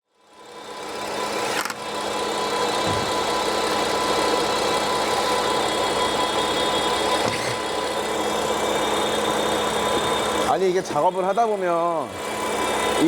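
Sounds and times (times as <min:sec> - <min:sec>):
car engine idling: 0:02.2 - 0:13.0
steady tones: 0:05.0 - 0:13.0.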